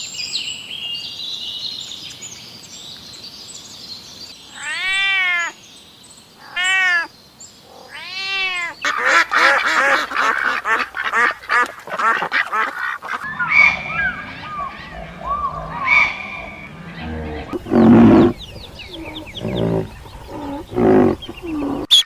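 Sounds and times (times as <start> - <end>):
drawn-out animal calls: 7.7 - 22.0
rapid short animal calls: 7.7 - 22.0.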